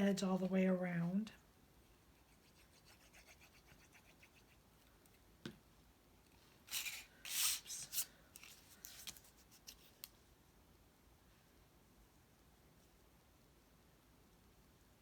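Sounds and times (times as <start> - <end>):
paper rustling and rubbing: 6.6 - 10.1.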